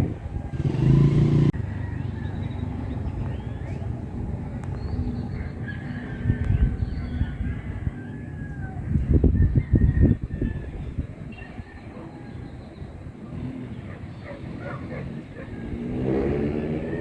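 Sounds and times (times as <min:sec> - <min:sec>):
motor vehicle running close: 0:00.0 - 0:07.0, 0:11.8 - 0:17.0
birds chirping: 0:00.0 - 0:17.0.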